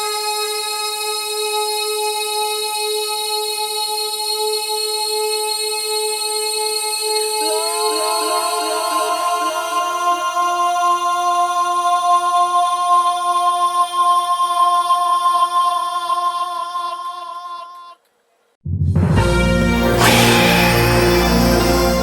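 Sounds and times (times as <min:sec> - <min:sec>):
loud music: 0:19.0 - 0:22.0
sustained synthesized chord: 0:19.6 - 0:22.0.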